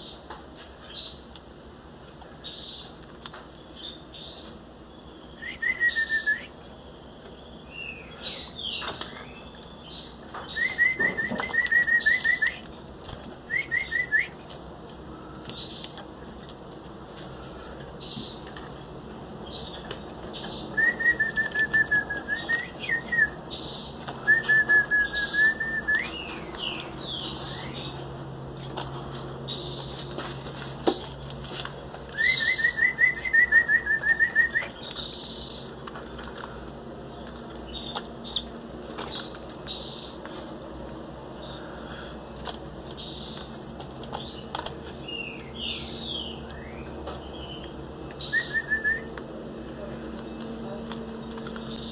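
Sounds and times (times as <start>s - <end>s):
chicks chirping rapidly: 37.6s - 40.6s, 42.8s - 49.2s.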